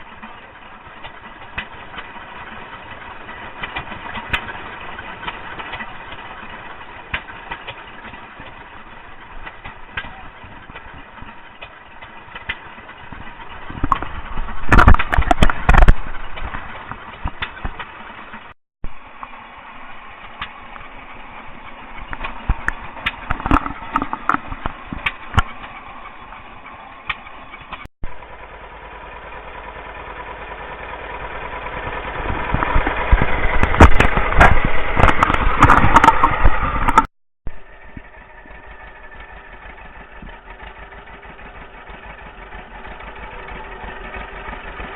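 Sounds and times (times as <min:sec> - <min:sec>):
farm machinery engines running: 0:00.0 - 0:44.9
rapid knocking and popping: 0:09.3 - 0:18.0, 0:22.0 - 0:25.8, 0:32.2 - 0:37.1.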